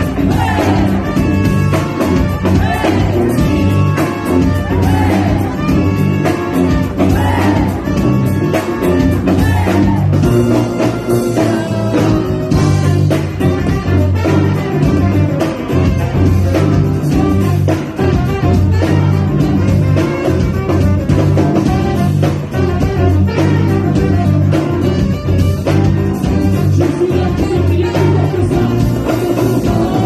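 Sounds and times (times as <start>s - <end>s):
funk-jazz brass band playing: 0.0s - 30.0s.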